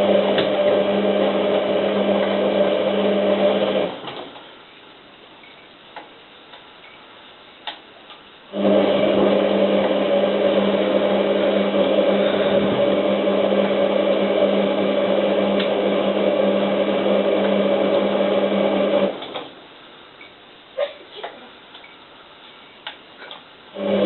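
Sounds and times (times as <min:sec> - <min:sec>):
washing machine motor hum: 0:00.0 - 0:04.7, 0:07.5 - 0:20.1, 0:23.6 - 0:24.0.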